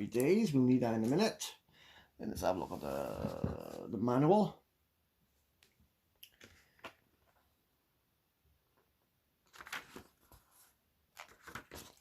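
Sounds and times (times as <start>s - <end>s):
paper pages rustling: 9.4s - 12.0s.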